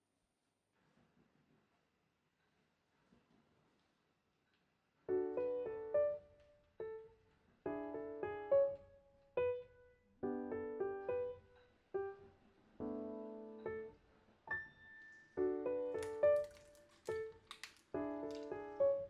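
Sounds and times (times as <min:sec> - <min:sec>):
soft piano music: 0:05.1 - 0:19.0.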